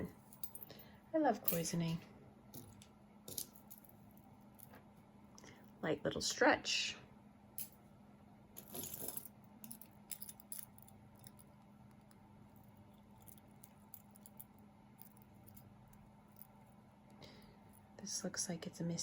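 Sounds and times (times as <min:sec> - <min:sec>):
jewelry clinking and rattling: 0:00.0 - 0:04.8, 0:08.6 - 0:17.0.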